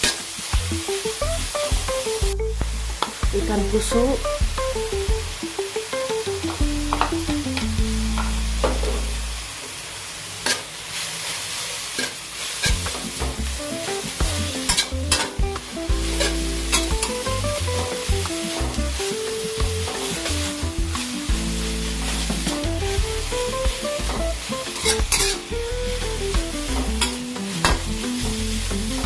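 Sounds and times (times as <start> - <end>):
background music with bass: 0.0 - 5.6, 6.3 - 9.5, 12.7 - 29.0
leaves sizzling in a pan: 8.1 - 29.0.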